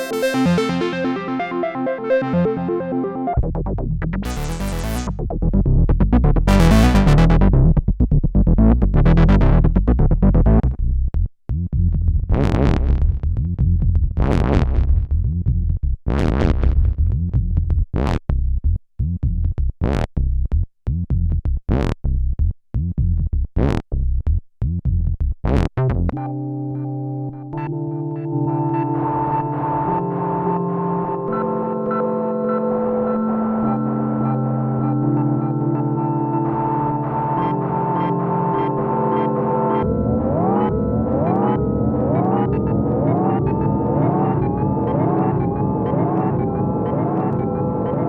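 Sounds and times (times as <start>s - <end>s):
synth pad chord: 0.0s - 3.4s, 27.8s - 48.0s
synth bass sequence: 0.0s - 17.6s, 27.7s - 48.0s.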